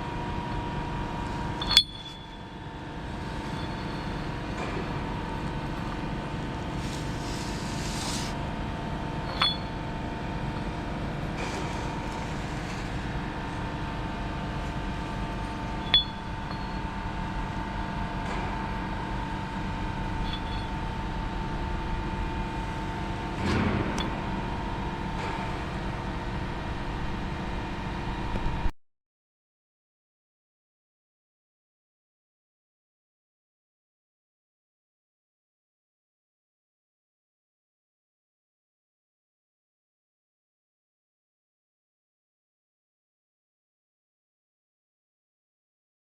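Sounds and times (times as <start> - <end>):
machine hum with whine: 0.0 - 28.7
light metallic clinks: 1.4 - 6.4, 9.3 - 9.8, 15.8 - 16.9, 20.2 - 20.8.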